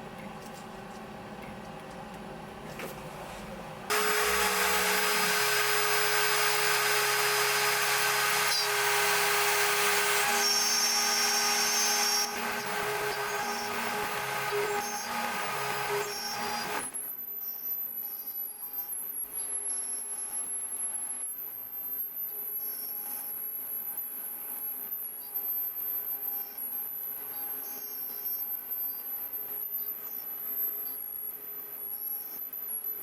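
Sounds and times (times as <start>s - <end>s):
stepper motors humming: 3.9s - 17.0s
wood cutting noise: 3.9s - 17.0s
router spindle whine: 3.9s - 19.1s.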